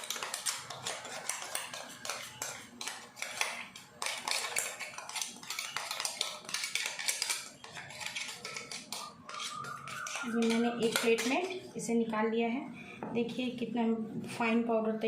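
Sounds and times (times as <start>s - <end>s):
metal spoon scraping steel jar: 0.4s - 11.6s.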